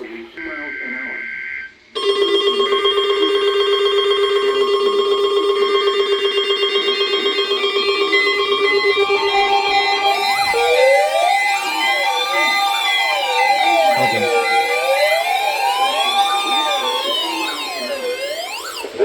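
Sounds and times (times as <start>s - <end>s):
electronic alert tone: 13.7s - 14.4s.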